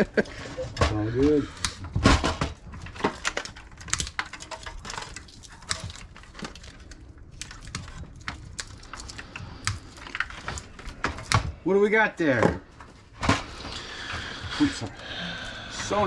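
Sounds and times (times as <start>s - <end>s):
metal and plastic parts clicking: 0.7s - 11.5s.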